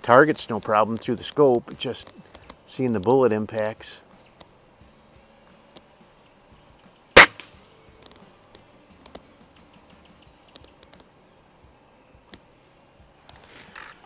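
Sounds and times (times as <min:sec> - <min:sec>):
air rifle shot: 0:07.2 - 0:07.5.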